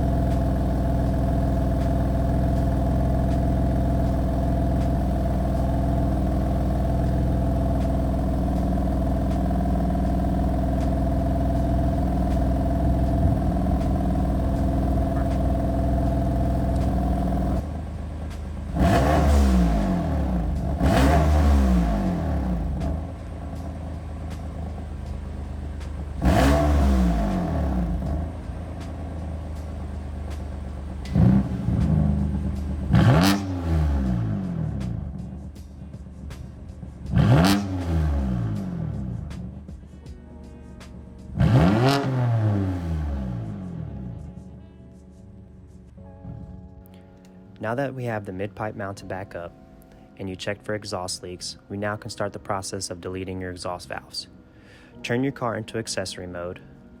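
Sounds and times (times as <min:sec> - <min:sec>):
car engine revving in blips: 0:00.0 - 0:40.2, 0:40.8 - 0:44.5
car engine idling: 0:00.0 - 0:47.6.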